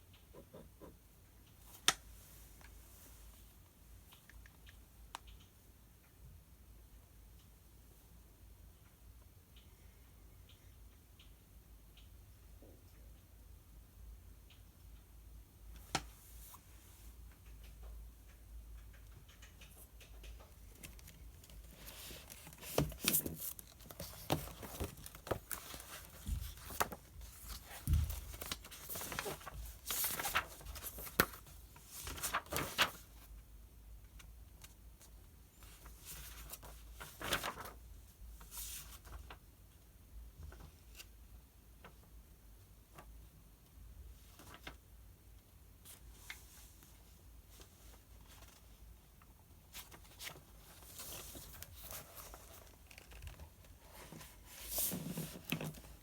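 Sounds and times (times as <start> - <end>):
light ticks and taps: 3.6 - 6.4, 10.4 - 16.2, 17.2 - 31.4
pages turning and rustling: 20.5 - 33.3, 35.6 - 39.4, 44.2 - 44.8, 47.5 - 48.8, 49.7 - 56.0.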